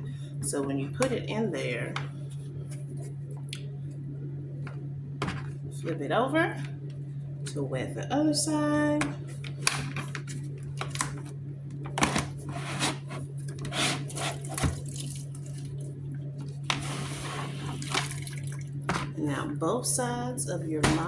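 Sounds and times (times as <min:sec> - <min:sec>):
low hum: 0:00.0 - 0:21.0
water splashes: 0:17.8 - 0:18.8.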